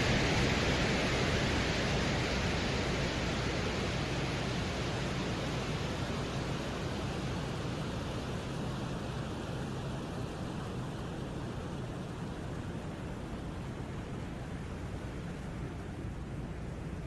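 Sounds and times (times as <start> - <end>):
steady rushing noise: 0.0 - 11.4.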